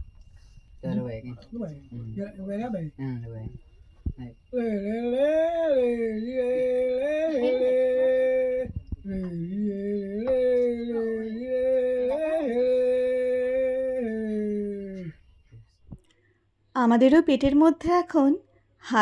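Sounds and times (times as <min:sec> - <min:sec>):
person humming a melodic tune: 0:04.2 - 0:15.2.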